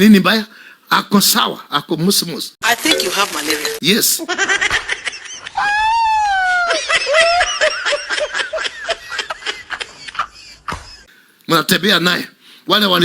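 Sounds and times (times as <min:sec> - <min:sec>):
person laughing: 0:04.3 - 0:11.1.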